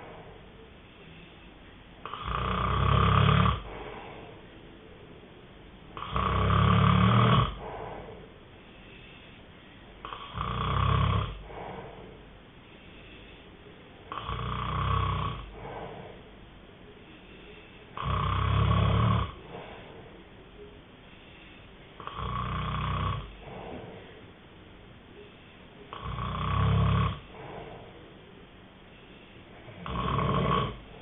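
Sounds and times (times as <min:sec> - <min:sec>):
person snoring: 0:02.0 - 0:04.4, 0:06.0 - 0:08.3, 0:10.0 - 0:12.2, 0:14.1 - 0:16.2, 0:17.3 - 0:20.2, 0:22.0 - 0:24.2, 0:25.9 - 0:28.0, 0:29.6 - 0:31.0.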